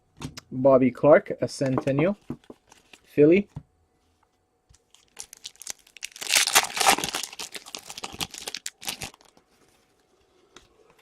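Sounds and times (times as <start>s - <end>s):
wrapper crinkling and tearing: 4.9s - 9.4s.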